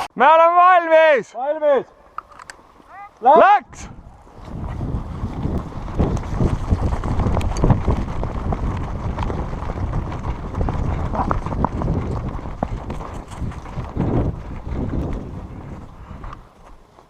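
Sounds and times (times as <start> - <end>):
wind buffeting microphone: 3.6 - 17.0
running footsteps thudding: 4.2 - 17.0.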